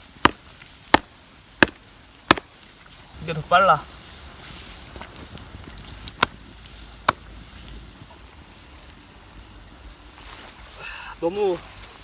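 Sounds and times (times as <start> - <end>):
chopping blows on wood: 0.2 - 2.5.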